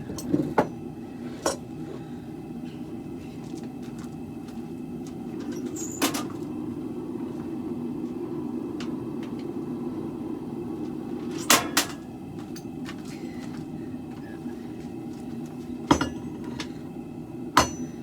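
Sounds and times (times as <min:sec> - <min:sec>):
gas forge burner roaring: 0:00.0 - 0:18.0
metallic clanks: 0:05.4 - 0:06.5, 0:11.3 - 0:12.7.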